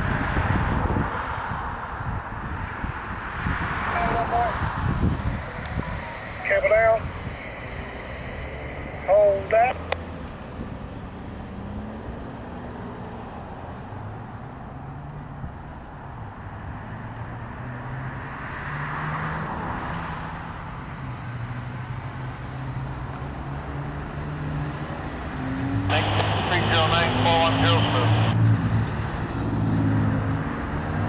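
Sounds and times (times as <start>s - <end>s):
vehicle passing: 3.3s - 13.4s
engine humming: 5.0s - 11.2s, 25.8s - 29.3s.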